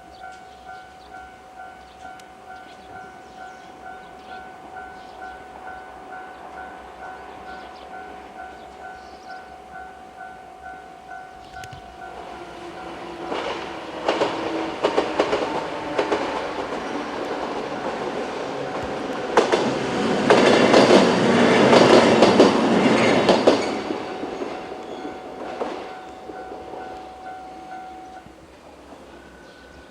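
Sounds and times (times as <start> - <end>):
level crossing bell ringing: 0.0 - 13.9, 16.5 - 19.5, 20.5 - 29.9
train wheels clicking over rail joints: 11.4 - 29.9.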